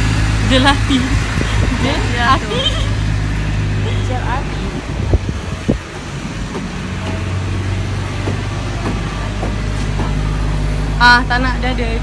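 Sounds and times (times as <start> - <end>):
road vehicle rumble: 0.0 - 12.0
short knocks: 5.7 - 10.3.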